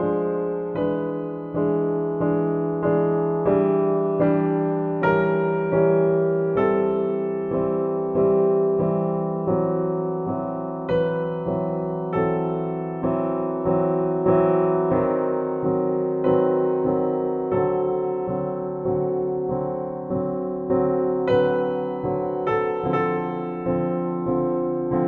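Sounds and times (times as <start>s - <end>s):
electric piano playing slow chords: 0.0s - 25.0s.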